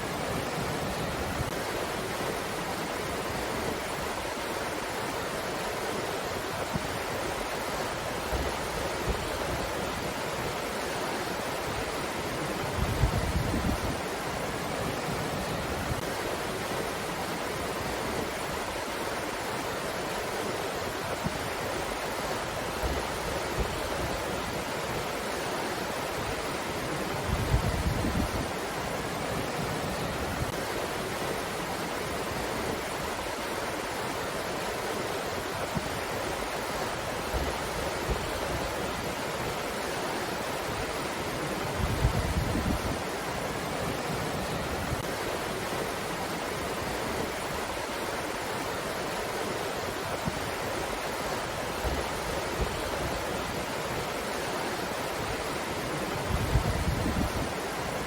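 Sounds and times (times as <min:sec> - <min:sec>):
low rumble of wind gusts: 0:05.8 - 0:19.4, 0:26.0 - 0:39.8, 0:40.6 - 0:49.1, 0:55.1 - 0:58.0.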